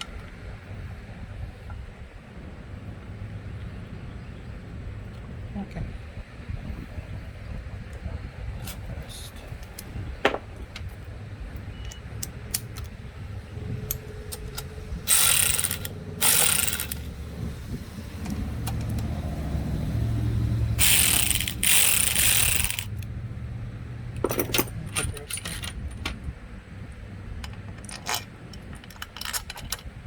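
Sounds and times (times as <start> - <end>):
small metal clicks: 13.8 - 17.1, 20.8 - 23.1, 27.4 - 29.9
ratchet wrench clicking: 13.8 - 17.2, 20.8 - 23.1.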